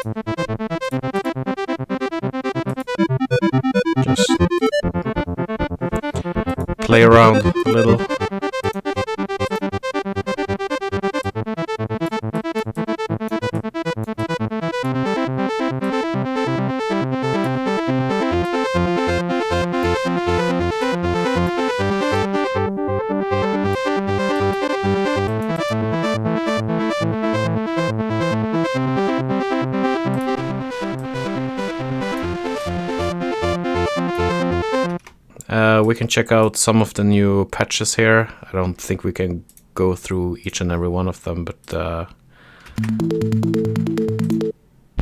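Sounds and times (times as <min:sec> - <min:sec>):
synthesizer playing short notes: 0:02.8 - 0:10.3, 0:42.8 - 0:44.5.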